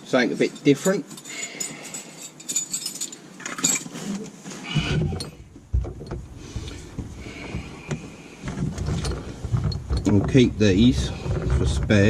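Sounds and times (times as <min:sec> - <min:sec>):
low rumbling bumps: 0:04.7 - 0:12.0.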